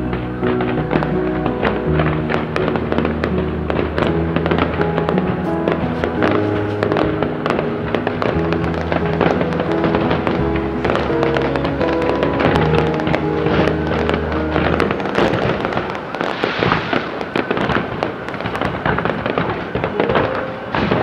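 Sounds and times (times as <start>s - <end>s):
fireworks bangs and crackles: 0.0s - 21.0s.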